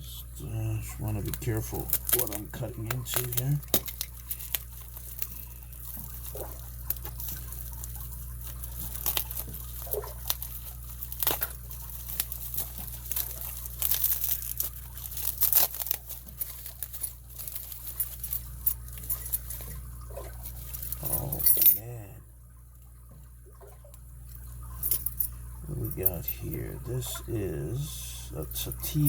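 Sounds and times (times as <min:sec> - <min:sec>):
packaging crinkling and tearing: 0:01.0 - 0:21.3
small clicks and rustles: 0:01.2 - 0:21.8, 0:22.7 - 0:26.0.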